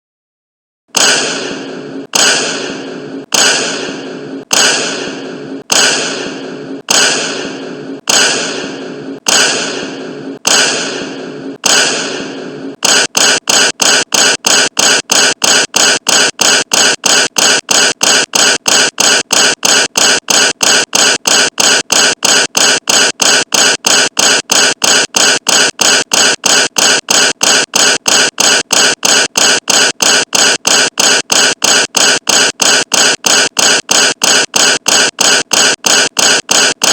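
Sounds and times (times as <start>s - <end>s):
boom sound effect: 1.0s - 13.5s.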